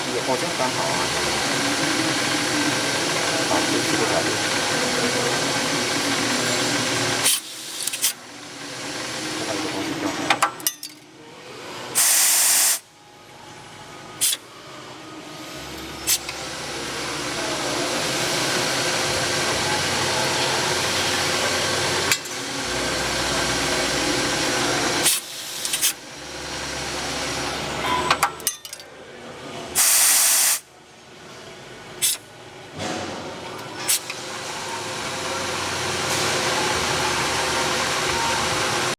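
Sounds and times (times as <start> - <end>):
lathe machining hiss: 0.1 - 8.2, 11.9 - 12.9, 15.5 - 27.7, 29.8 - 30.7
loud hiss: 12.0 - 12.8, 29.8 - 30.6.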